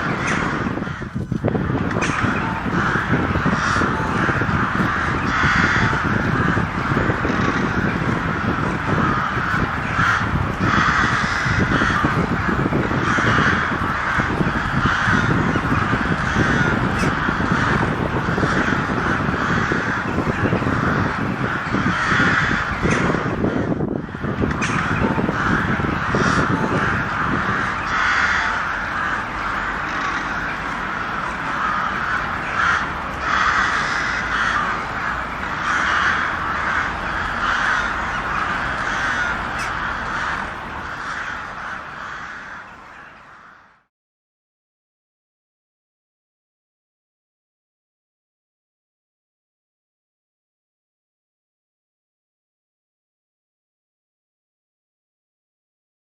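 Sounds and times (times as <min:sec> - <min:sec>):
crows cawing: 0:00.0 - 0:43.9.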